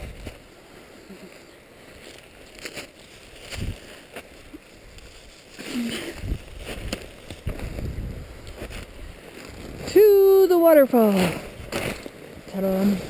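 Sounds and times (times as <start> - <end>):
footsteps crunching in snow: 0.0 - 10.3.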